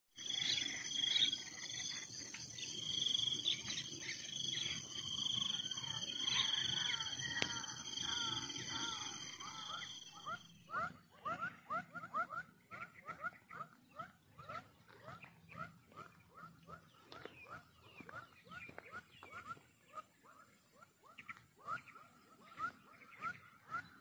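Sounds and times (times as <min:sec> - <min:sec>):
insects trilling: 0:00.2 - 0:11.3
rising chirping calls: 0:00.2 - 0:24.0.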